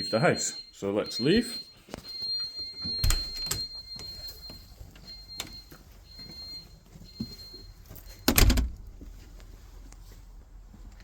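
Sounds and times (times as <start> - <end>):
alarm beeping: 0.0 - 8.4
door shutting with a thud: 8.3 - 8.9.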